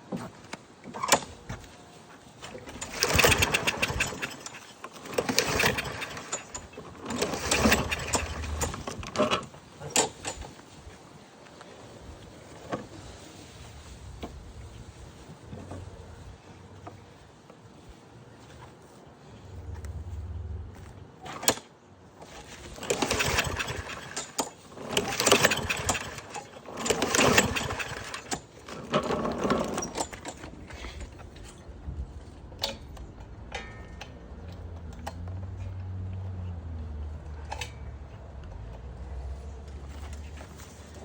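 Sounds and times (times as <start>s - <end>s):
mower engine cranking: 2.4s - 10.6s, 21.2s - 31.6s, 37.2s - 37.8s.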